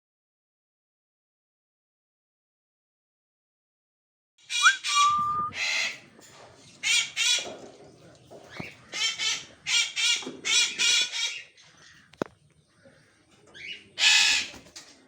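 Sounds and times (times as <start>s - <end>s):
parrot whistle: 4.5s - 5.6s
parrot squawking: 4.5s - 6.0s.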